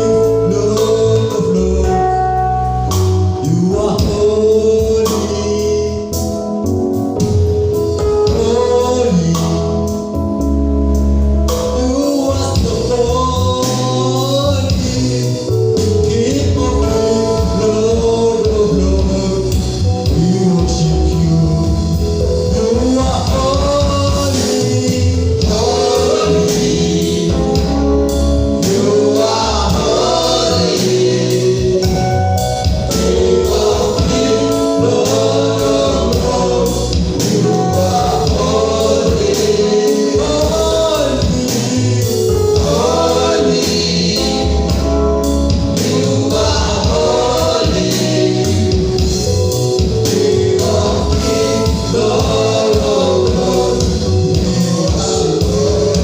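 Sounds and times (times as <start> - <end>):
bass and drum beat: 0.0 - 56.0
group of voices singing: 11.8 - 21.6, 22.5 - 56.0.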